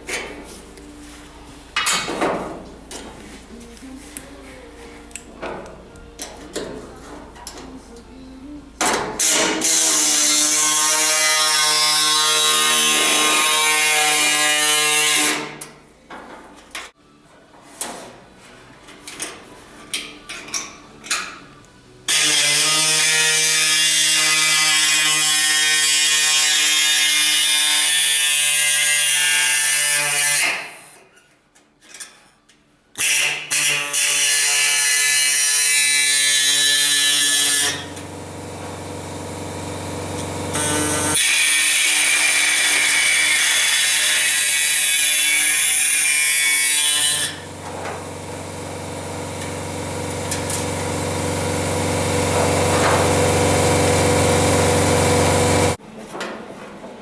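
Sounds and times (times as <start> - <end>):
sheet-metal machine buzzing: 34.5 - 55.8.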